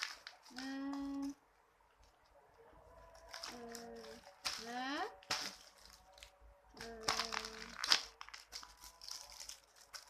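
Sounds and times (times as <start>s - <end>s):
plastic crinkling: 0.0s - 1.4s, 3.0s - 10.0s.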